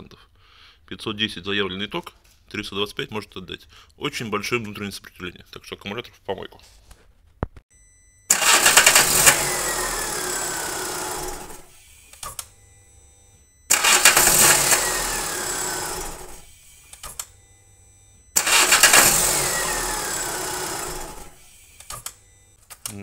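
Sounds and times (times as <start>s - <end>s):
engine starter cranking: 8.3s - 12.5s, 13.7s - 17.3s, 18.3s - 22.2s.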